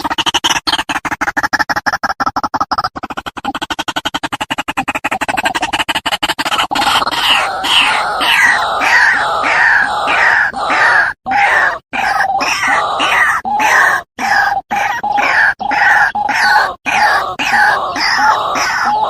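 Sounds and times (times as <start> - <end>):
waterhen harsh calls: 6.4 - 19.0.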